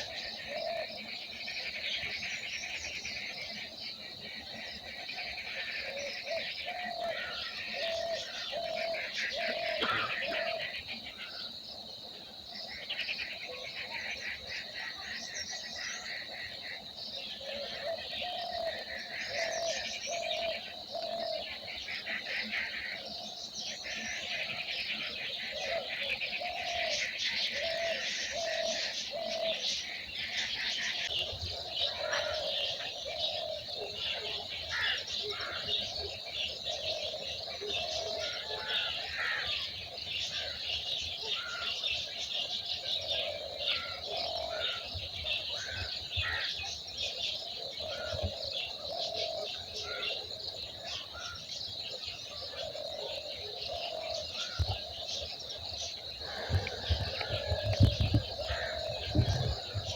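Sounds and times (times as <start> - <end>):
doves cooing: 0.0 - 2.1, 4.5 - 11.5, 17.3 - 59.9
small birds chirping: 12.7 - 59.9.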